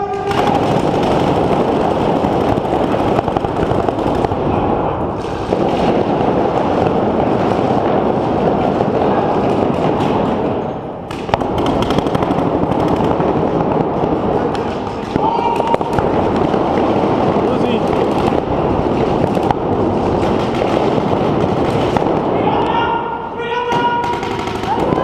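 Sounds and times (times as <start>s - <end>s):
paintball markers firing: 0.0s - 4.4s, 5.2s - 22.8s, 23.7s - 25.0s.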